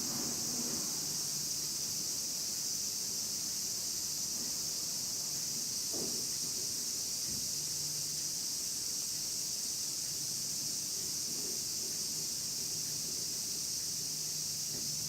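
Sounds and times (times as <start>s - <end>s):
cicadas droning: 0.0s - 15.0s.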